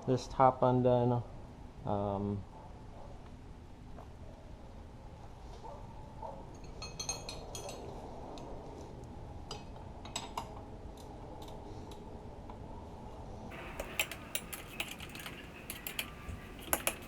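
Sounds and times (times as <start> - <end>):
metallic clinks of hand tools: 13.5 - 17.0.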